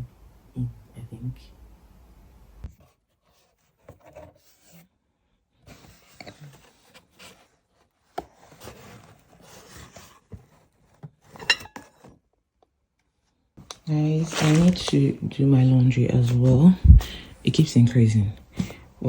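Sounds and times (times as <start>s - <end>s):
objects scraping and rubbing: 14.0s - 15.2s.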